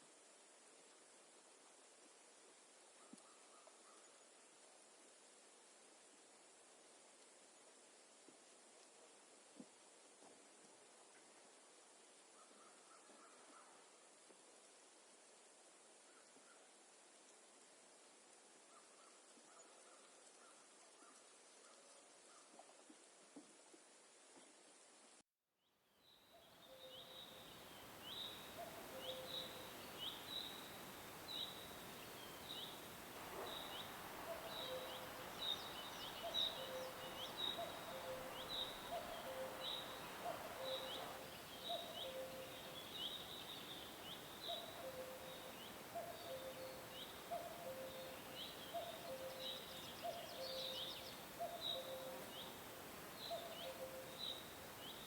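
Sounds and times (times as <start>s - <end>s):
background hiss: 0.0s - 55.0s.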